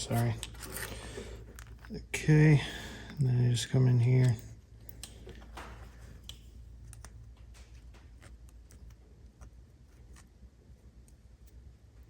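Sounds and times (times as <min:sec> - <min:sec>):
low steady hum: 0:00.0 - 0:12.0
wires and connector clicking: 0:04.2 - 0:10.3.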